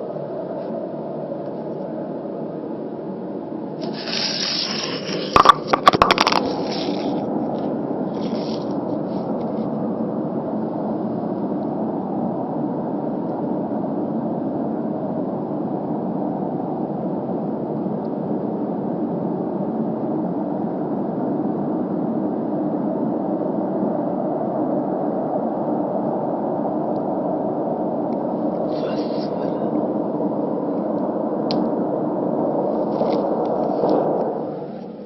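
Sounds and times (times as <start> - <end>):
low rumbling drone: 0.0 - 13.9, 27.7 - 35.0.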